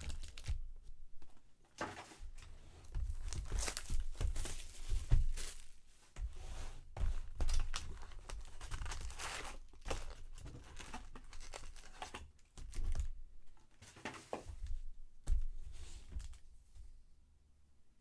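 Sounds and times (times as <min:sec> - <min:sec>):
wrapper tearing and crinkling: 0:00.0 - 0:00.5.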